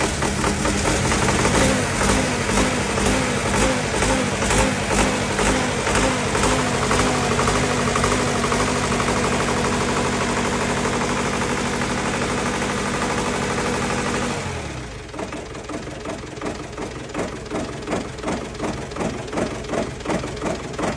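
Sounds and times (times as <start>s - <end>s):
diesel generator engine running: 0.0s - 20.9s.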